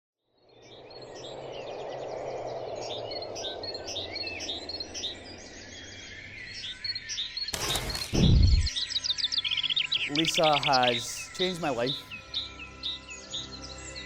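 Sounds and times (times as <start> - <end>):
birds chirping and trilling: 0.3 - 14.0
short burst of noise: 7.5 - 8.7.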